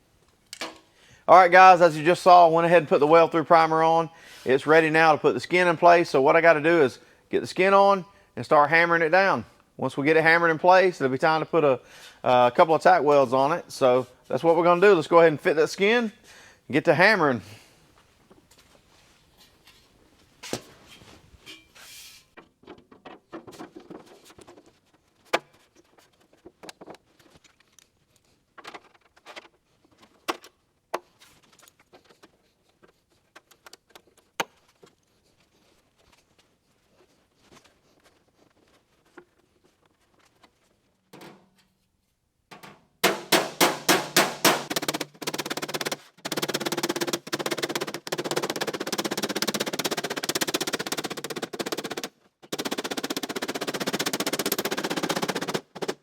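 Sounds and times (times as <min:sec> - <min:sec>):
sheet metal knocks and clanks: 0:42.5 - 0:48.7
hammer blows on sheet metal: 0:43.0 - 0:46.0.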